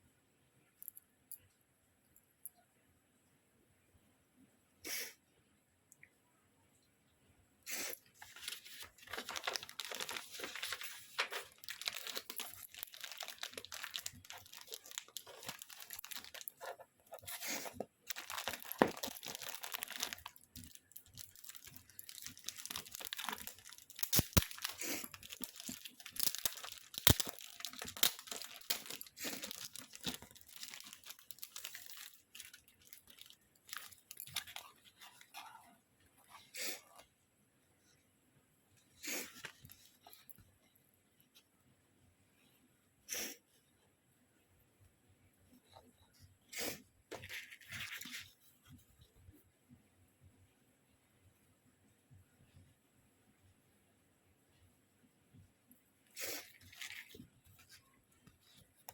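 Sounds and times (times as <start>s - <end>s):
packaging torn and crinkled: 8.2s - 35.4s, 56.3s - 57.8s.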